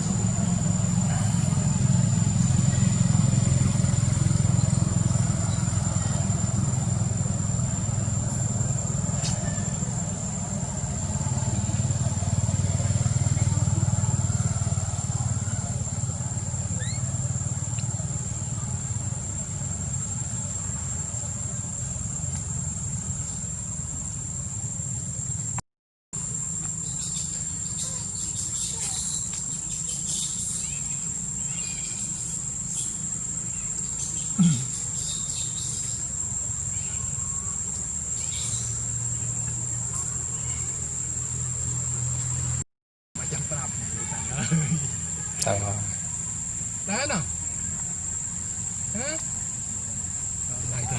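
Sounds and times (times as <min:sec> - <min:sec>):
insects shrilling: 0:00.0 - 0:25.4, 0:26.2 - 0:42.6, 0:43.2 - 0:50.9
motor running rumble: 0:00.0 - 0:25.6.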